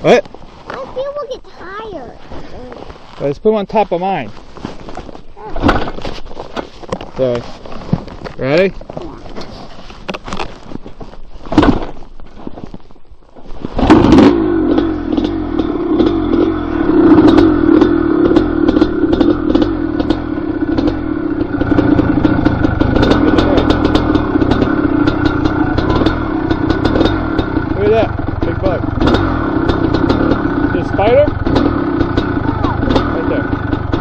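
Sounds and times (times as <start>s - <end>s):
dirt bike engine: 2.2s - 10.4s, 13.3s - 34.0s
sharp clicks and clatter: 17.1s - 34.0s.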